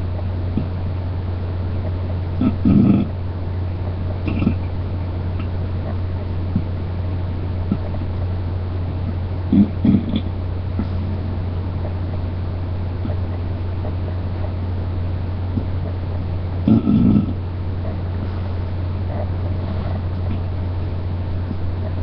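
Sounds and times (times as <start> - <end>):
low steady hum: 0.0 - 22.0
closed-mouth burps: 2.4 - 3.1, 4.2 - 4.7, 9.5 - 11.0, 16.6 - 17.4.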